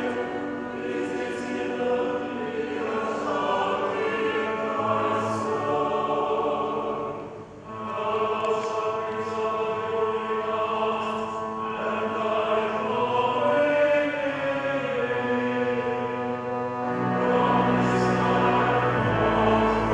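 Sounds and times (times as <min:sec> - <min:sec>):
choir singing a hymn: 0:00.0 - 0:19.9.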